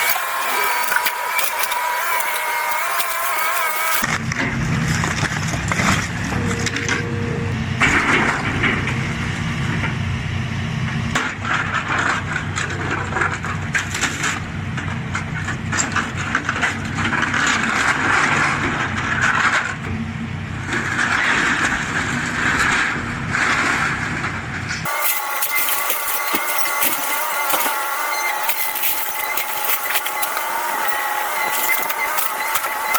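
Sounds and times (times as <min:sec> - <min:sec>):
debris scraping and crushing: 0:00.0 - 0:04.1, 0:24.9 - 0:32.9
excavator engine running: 0:00.0 - 0:11.1, 0:24.9 - 0:32.9.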